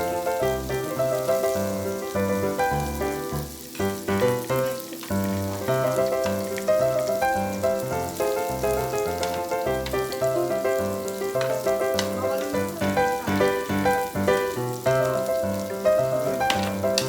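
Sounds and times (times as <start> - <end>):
pork sizzling on a grill: 0.0 - 17.0.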